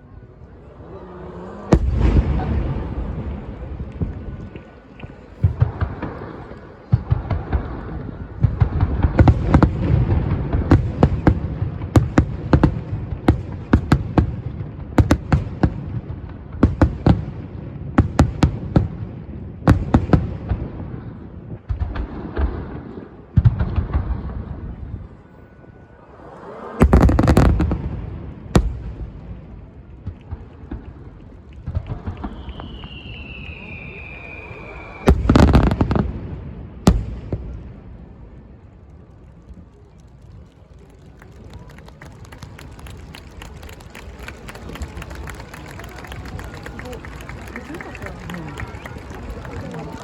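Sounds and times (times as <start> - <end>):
fireworks bursting: 1.6 - 17.4, 25.9 - 37.9.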